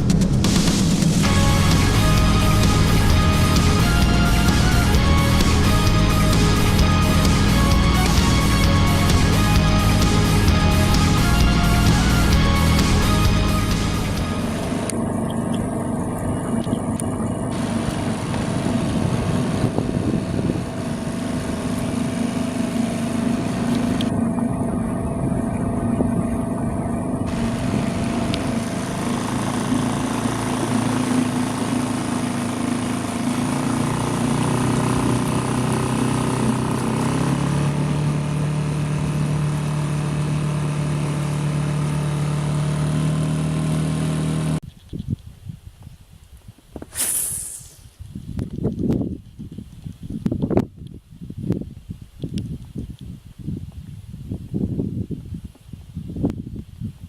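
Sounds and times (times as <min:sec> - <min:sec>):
motor engine running: 0:00.0 - 0:44.6.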